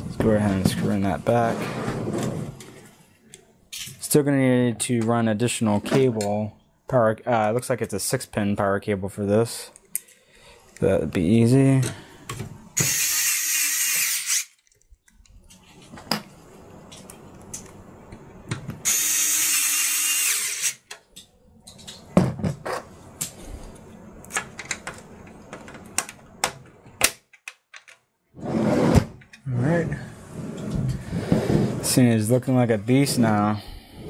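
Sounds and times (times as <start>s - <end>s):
power screwdriver running: 12.8s - 14.5s, 18.9s - 20.8s
clicks and knocks of parts handled: 20.8s - 28.1s.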